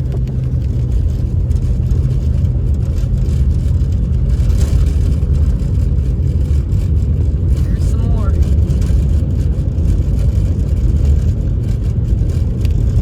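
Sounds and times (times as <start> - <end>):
truck engine and road rumble: 0.0 - 13.0.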